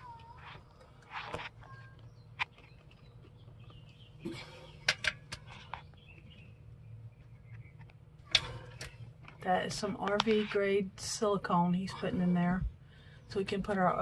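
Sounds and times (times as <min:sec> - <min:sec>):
low steady hum: 0:00.0 - 0:14.0.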